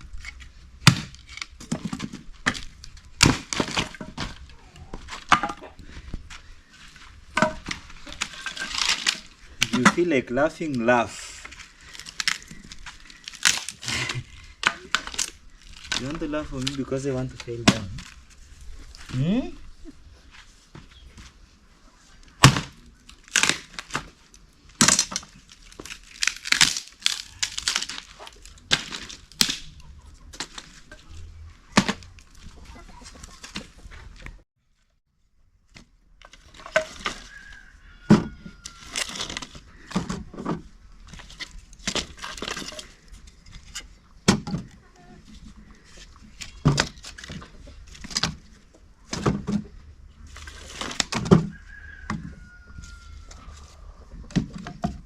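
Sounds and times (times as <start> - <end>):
sharp cracks and knocks: 0.2 - 5.6, 11.5 - 16.8, 17.4 - 18.2, 22.4 - 31.0
chicken clucking: 32.5 - 33.9.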